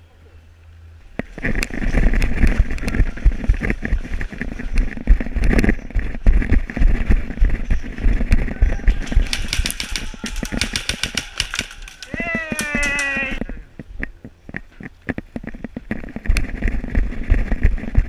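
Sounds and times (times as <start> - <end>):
airsoft rifle firing bursts: 8.9 - 13.4.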